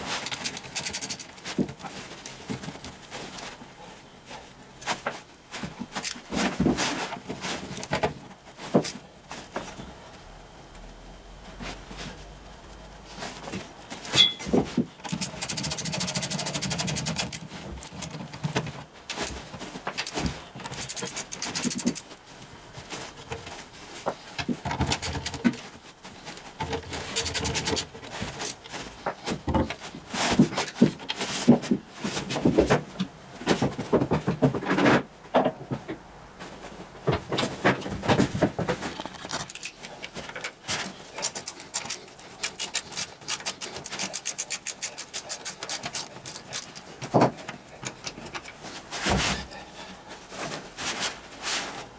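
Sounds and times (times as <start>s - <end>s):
tools clanking against metal: 14.1s - 15.5s
ratchet wrench clicking: 41.2s - 46.7s.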